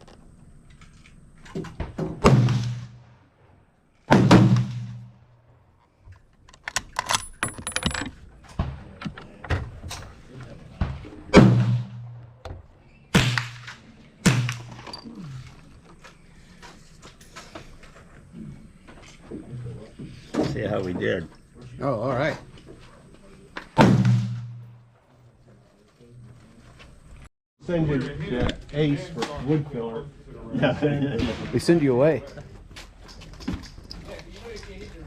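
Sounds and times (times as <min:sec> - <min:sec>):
gunshots with ringing tails: 0:02.2 - 0:03.5, 0:04.1 - 0:05.2, 0:11.3 - 0:12.4, 0:23.8 - 0:24.8.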